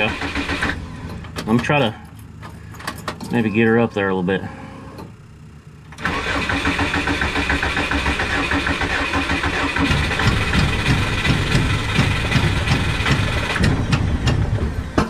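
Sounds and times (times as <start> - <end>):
car engine cranking and sputtering: 0.0 - 3.8, 5.0 - 15.0.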